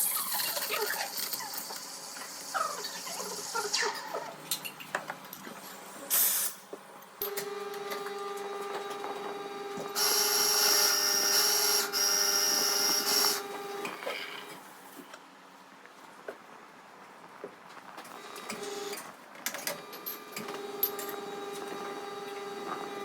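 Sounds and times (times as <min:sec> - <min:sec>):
espresso machine hum: 0:07.3 - 0:14.6, 0:19.9 - 0:23.0
steam hiss with high whistle: 0:10.0 - 0:13.5.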